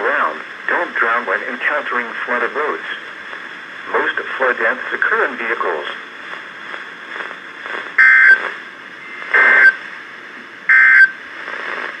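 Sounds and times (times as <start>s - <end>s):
faint radio static hiss: 0.0s - 12.0s.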